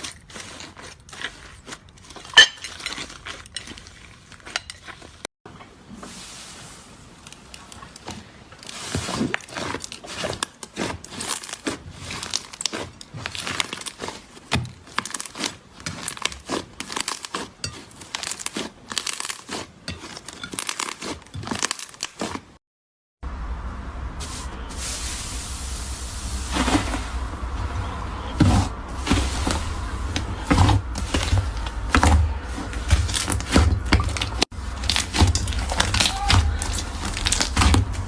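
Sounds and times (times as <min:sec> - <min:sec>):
slime crackling and popping: 0:08.6 - 0:22.4, 0:32.8 - 0:38.0
steady hiss: 0:24.1 - 0:27.2.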